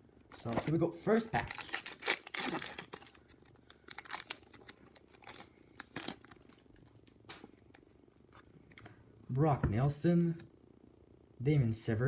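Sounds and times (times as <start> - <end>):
wrapper tearing and crinkling: 0.3 - 7.8
cards rustling: 0.3 - 7.9.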